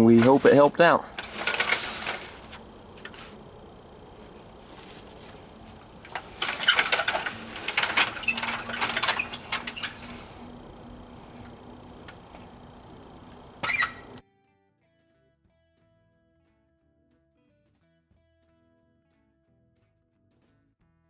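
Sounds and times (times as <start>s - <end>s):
small metal parts clinking: 5.1s - 10.6s.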